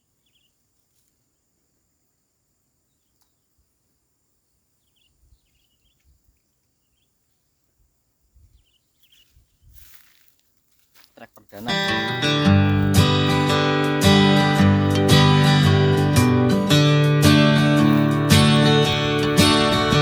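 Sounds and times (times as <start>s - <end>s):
faint bird chirps: 0.0s - 1.0s, 2.8s - 9.8s
soft low bumps: 14.2s - 20.0s.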